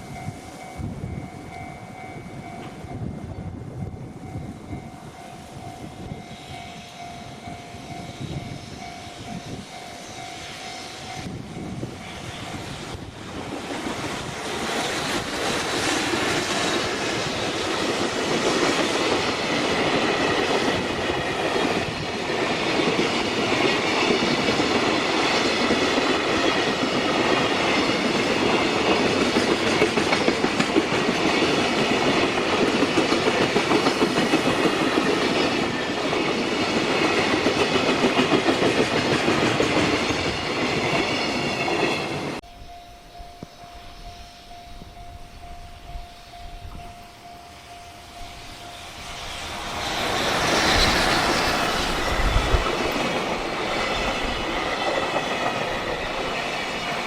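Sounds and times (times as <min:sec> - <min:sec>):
train wheels clattering over rails: 0:08.0 - 0:42.4, 0:48.9 - 0:57.0.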